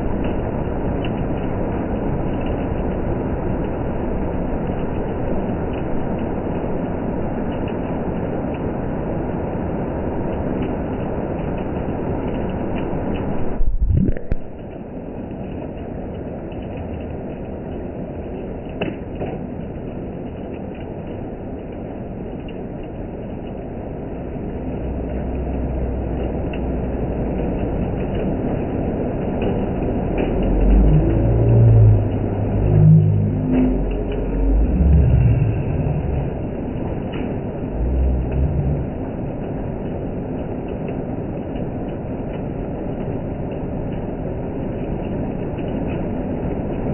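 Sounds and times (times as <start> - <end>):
hail and rain pelting down: 0.0 - 13.7, 14.3 - 46.9
low rumble: 12.9 - 14.9, 23.2 - 40.6.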